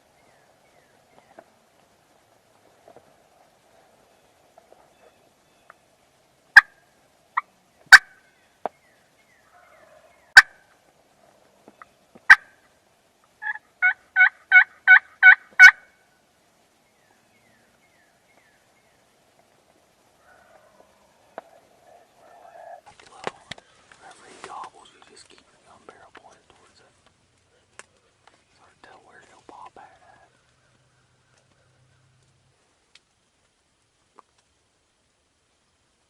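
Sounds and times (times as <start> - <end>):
turkey clucks: 9.5 - 10.6, 12.2 - 12.6, 13.4 - 15.9, 20.2 - 25.7
turkey yelps: 13.4 - 15.9, 20.2 - 22.9.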